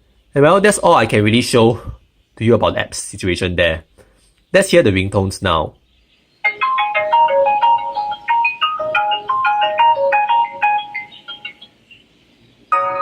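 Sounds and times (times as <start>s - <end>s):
tablet ringtone melody: 6.4s - 11.8s, 12.7s - 13.0s.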